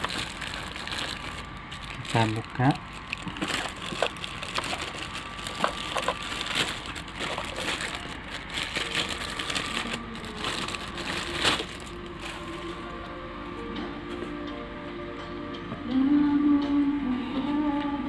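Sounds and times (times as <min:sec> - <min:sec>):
loud packaging crack: 0:00.0 - 0:12.5
packaging crackling and rustling: 0:00.0 - 0:12.9.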